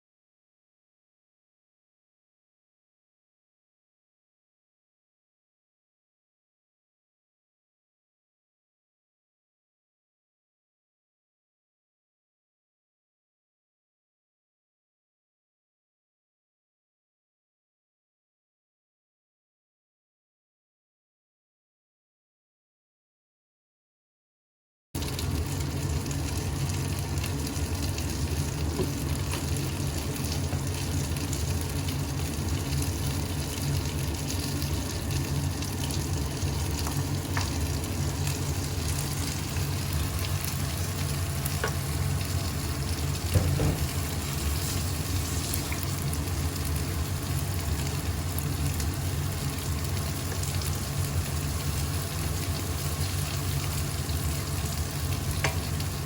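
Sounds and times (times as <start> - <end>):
food frying in a pan: 25.0 - 56.0.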